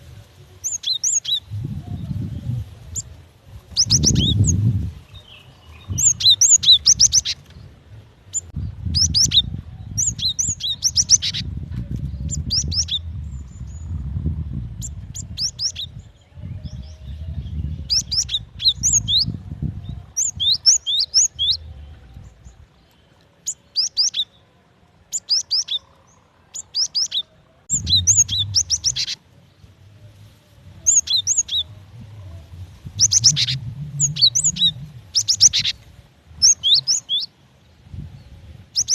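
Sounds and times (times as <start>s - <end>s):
bird chirping rapidly: 0.6s - 1.5s, 3.7s - 7.5s, 8.3s - 11.5s, 12.2s - 14.0s, 25.1s - 29.2s, 30.8s - 31.8s, 32.8s - 35.8s, 36.4s - 37.3s
low background rumble: 1.4s - 23.1s, 25.8s - 38.8s.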